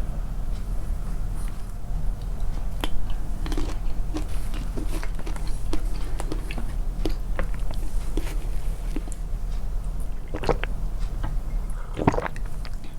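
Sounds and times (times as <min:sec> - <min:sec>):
steady low hum: 0:00.0 - 0:12.9
chewing crunches: 0:02.2 - 0:09.3, 0:09.9 - 0:12.9.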